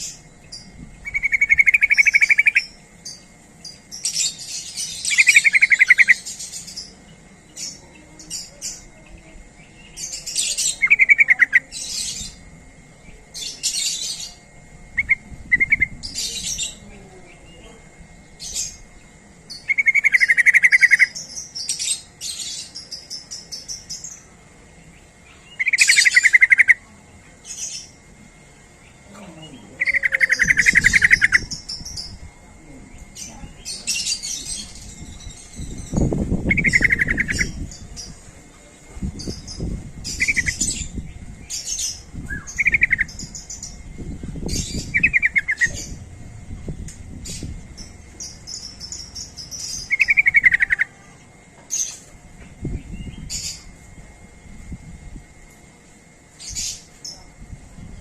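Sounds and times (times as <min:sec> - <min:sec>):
low rumbling noise: 0:00.0 - 0:04.0, 0:11.7 - 0:19.7, 0:26.7 - 0:56.1
higher bird chirps: 0:00.0 - 0:12.4, 0:13.1 - 0:17.6, 0:18.2 - 0:28.0, 0:28.7 - 0:38.2, 0:39.1 - 0:53.7
bulbuls calling: 0:00.0 - 0:58.0.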